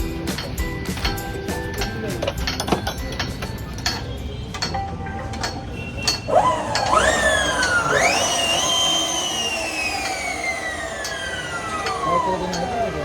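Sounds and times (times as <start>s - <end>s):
electric motor whine: 6.3s - 13.0s.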